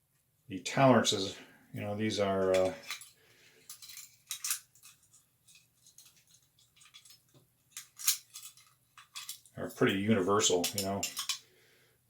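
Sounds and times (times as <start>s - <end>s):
padlocks and keys clicking: 7.8s - 9.5s.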